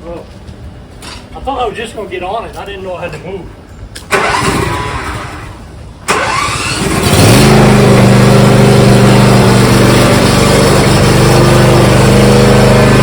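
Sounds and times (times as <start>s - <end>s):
engine starter cranking: 4.0s - 8.3s
engine idling: 4.1s - 13.0s.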